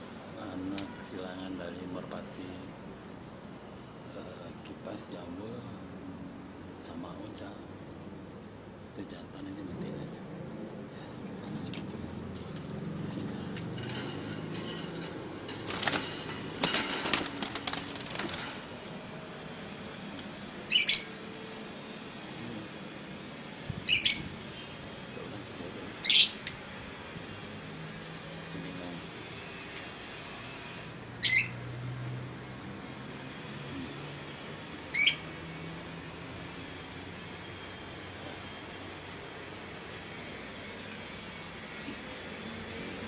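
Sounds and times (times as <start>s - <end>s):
steady low hum: 0.0s - 31.2s
doves flapping wings: 15.5s - 18.8s
high-pitched bird call: 20.7s - 21.2s, 23.9s - 24.4s, 26.0s - 26.4s, 31.2s - 31.6s, 34.9s - 35.3s.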